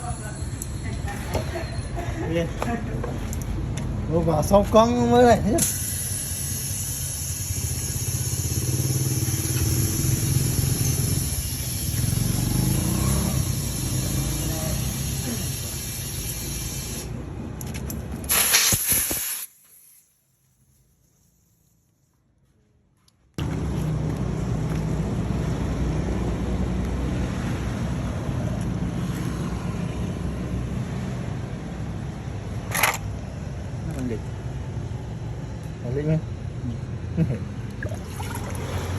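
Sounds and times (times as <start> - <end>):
air compressor pumping: 5.5 - 17.2, 18.2 - 20.1.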